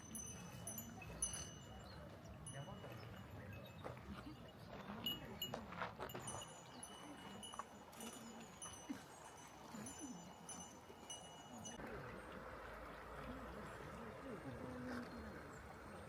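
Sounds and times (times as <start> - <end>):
high bell-like tinkling: 0.0 - 11.9
faint distant voices: 0.0 - 16.0.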